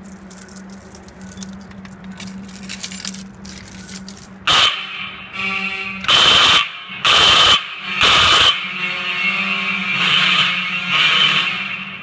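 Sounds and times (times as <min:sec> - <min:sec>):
light rattling and clicking: 0:00.0 - 0:04.4
steady low hum: 0:00.0 - 0:12.0
fire alarm horn blast: 0:04.5 - 0:12.0.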